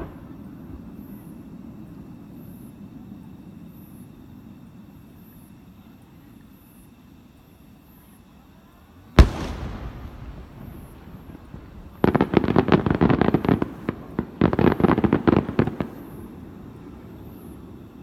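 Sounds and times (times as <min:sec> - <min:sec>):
crackling firework bangs: 0:00.0 - 0:00.6, 0:09.2 - 0:16.2
firework shell burst echo: 0:09.2 - 0:12.5.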